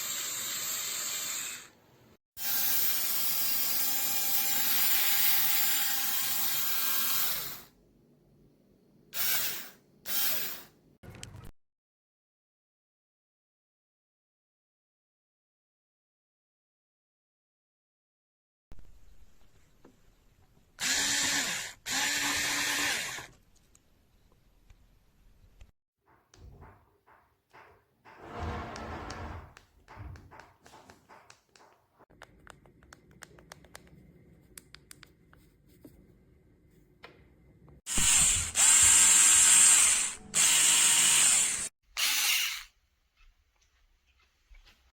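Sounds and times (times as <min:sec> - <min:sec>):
electric screwdriver motor whirring: 0:20.8 - 0:23.3, 0:37.9 - 0:42.7.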